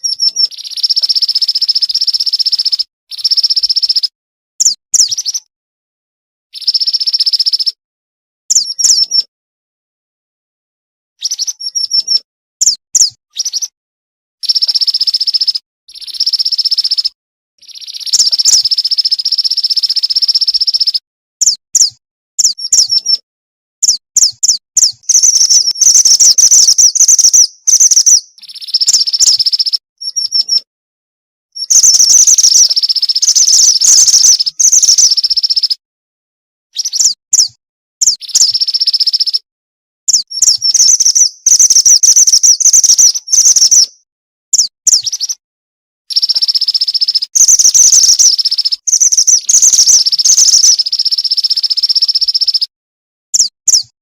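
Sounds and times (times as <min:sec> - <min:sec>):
bird chirps and buzzy trills: 0:23.9 - 0:30.6, 0:31.6 - 0:35.8, 0:40.1 - 0:43.8, 0:46.1 - 0:52.6.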